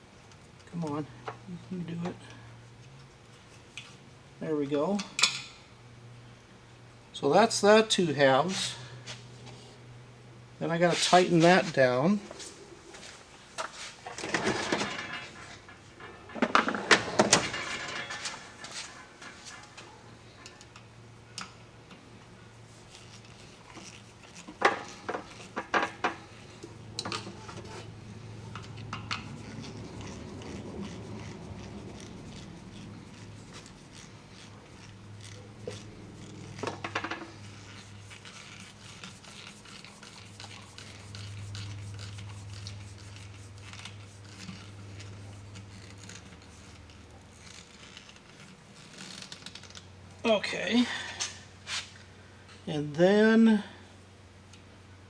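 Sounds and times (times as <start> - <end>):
metal parts clicking and clinking: 14.0 - 21.5.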